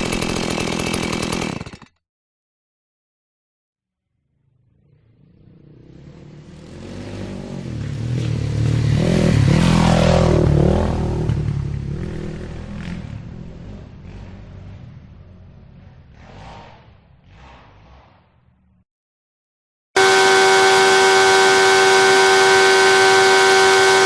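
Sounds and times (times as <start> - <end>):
motorcycle engine driving past: 4.2 - 18.8.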